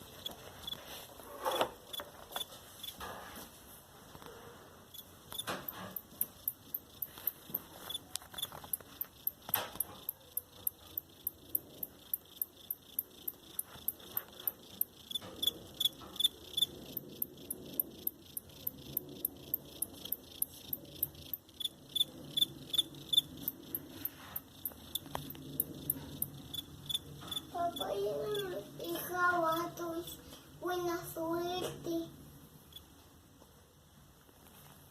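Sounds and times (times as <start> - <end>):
cricket chirping: 4.9 - 28.4, 32.7 - 32.9.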